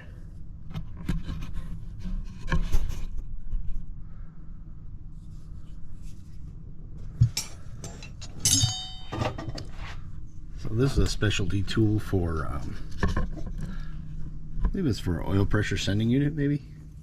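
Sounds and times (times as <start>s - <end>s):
metal on metal clink: 7.2s - 9.7s
metal tools rubbing and knocking: 7.2s - 9.9s.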